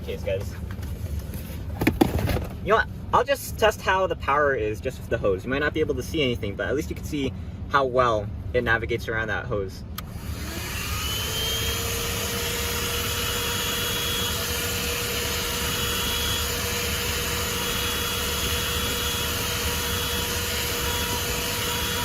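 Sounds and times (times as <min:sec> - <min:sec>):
handheld vacuum motor whining: 0:10.0 - 0:22.0.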